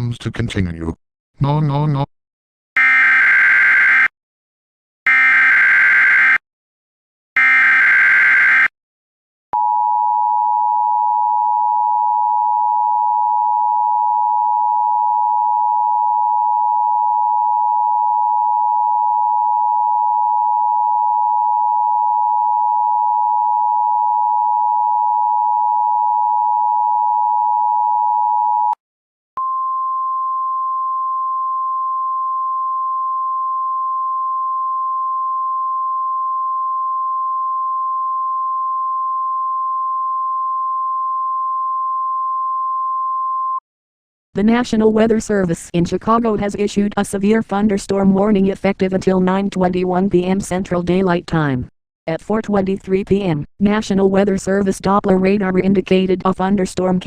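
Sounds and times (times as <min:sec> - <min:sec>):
steady warning tone: 0:07.4 - 0:08.7.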